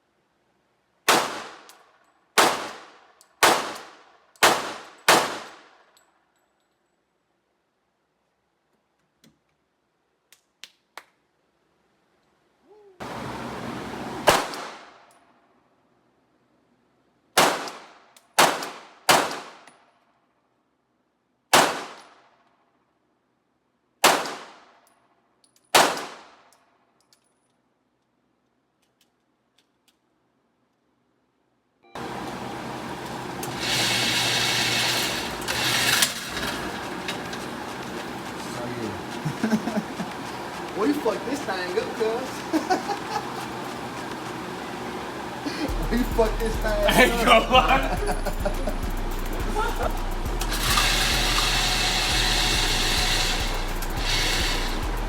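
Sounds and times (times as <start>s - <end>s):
pistol shots with echo: 1.1s - 1.7s, 2.4s - 5.7s, 14.3s - 15.0s, 17.4s - 19.7s, 21.5s - 22.2s, 24.0s - 24.7s, 25.7s - 26.4s.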